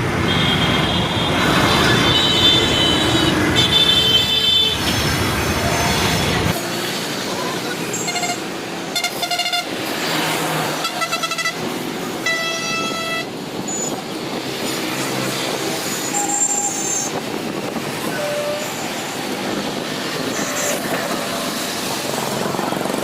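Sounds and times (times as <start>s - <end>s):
running train noise: 0.0s - 23.0s
train horn blasts: 12.2s - 13.3s.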